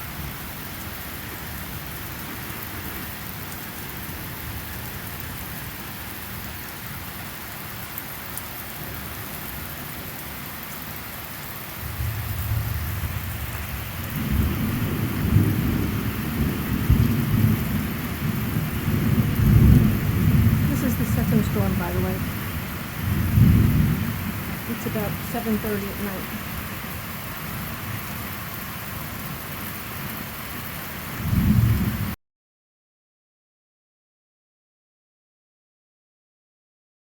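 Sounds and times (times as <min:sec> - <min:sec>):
steady rain: 0:00.0 - 0:32.2
thunder rumbling: 0:11.8 - 0:28.0, 0:31.2 - 0:32.2.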